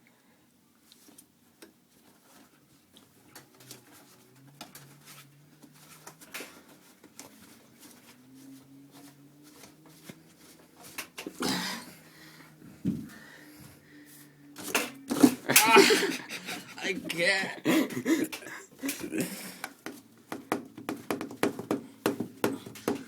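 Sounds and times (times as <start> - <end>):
light clicks and rustles: 0.8 - 11.4.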